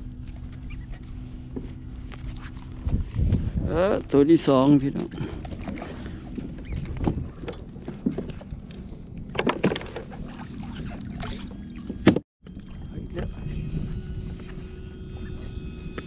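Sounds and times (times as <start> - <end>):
low rumbling of kayak on water: 0.0 - 15.9
knocks and clicks on hull: 5.0 - 12.2.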